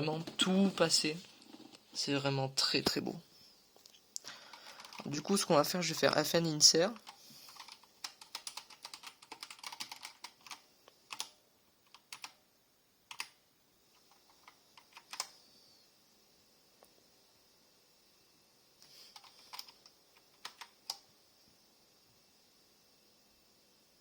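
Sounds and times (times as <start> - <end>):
mechanical keyboard keys clacking: 4.8 - 6.0, 6.9 - 12.4, 13.1 - 13.4, 14.0 - 15.3, 19.1 - 21.0.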